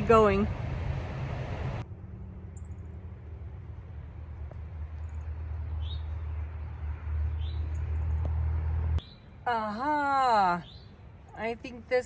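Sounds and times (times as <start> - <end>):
vehicle engine humming: 0.0 - 12.0
bird chirps: 5.0 - 6.2, 9.0 - 9.4, 10.6 - 11.0.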